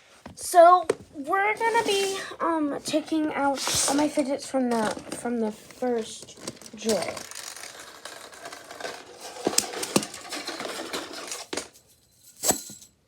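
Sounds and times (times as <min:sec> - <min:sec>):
fidget toys rattling: 0:03.8 - 0:11.7
toys clicking together: 0:06.4 - 0:08.0.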